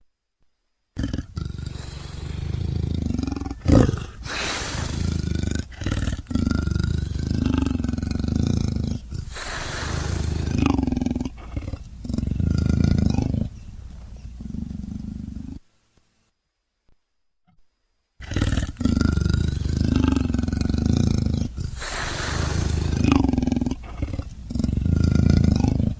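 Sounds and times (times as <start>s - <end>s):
deep raspy creature roars: 1.0s - 13.5s, 18.2s - 25.9s.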